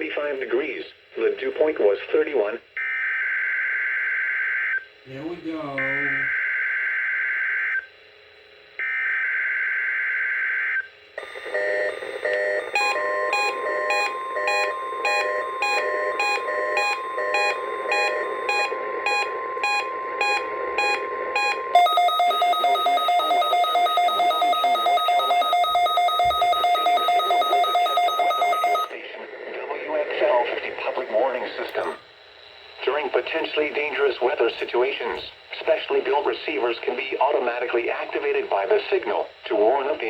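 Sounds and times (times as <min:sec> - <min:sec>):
steady warning alarm tone: 0:02.9 - 0:07.8, 0:08.8 - 0:29.0, 0:31.2 - 0:32.0
rapid electronic alert beeps: 0:11.2 - 0:28.9.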